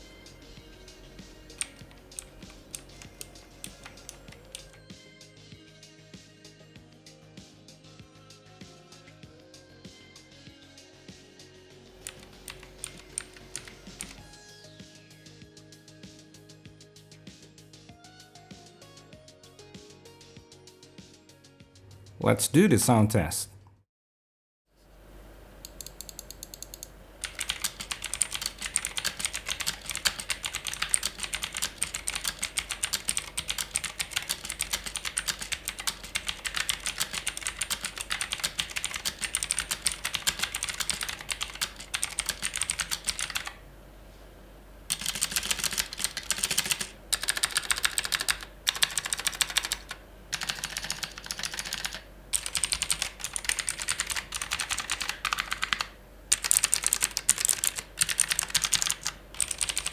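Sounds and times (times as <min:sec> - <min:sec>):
mechanical keyboard typing: 0:00.0 - 0:04.8, 0:11.9 - 0:14.3, 0:25.6 - 0:43.6, 0:44.9 - 0:59.9.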